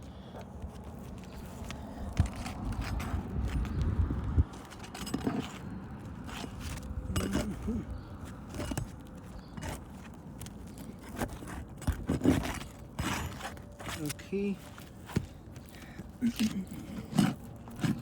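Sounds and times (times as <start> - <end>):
hand tools prying nails from shingles: 4.5 - 18.0.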